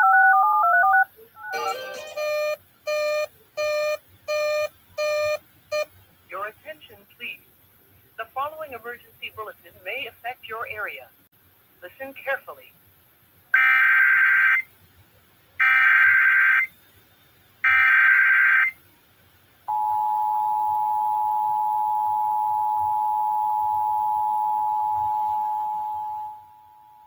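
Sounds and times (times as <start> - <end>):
two-tone attention signal: 0.0 - 5.8
digital data tone bursts: 0.0 - 5.9.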